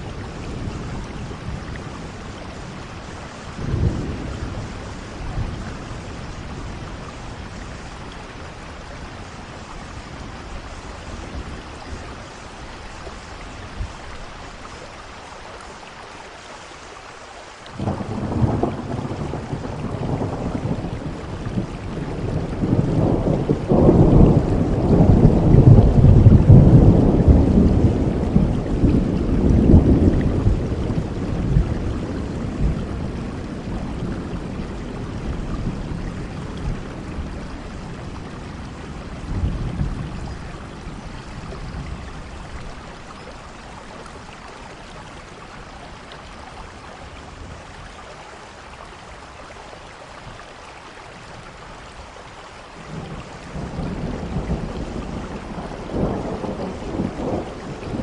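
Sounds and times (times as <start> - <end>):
thunder rumble: 0.0 - 12.8, 17.8 - 45.8, 52.9 - 58.0
steady rain: 0.0 - 58.0.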